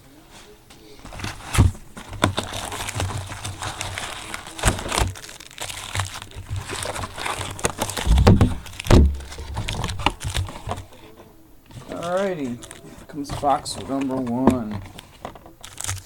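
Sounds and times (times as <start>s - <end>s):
plastic wrapping crinkling and tearing: 1.1s - 16.0s
box thumps: 4.6s - 10.9s.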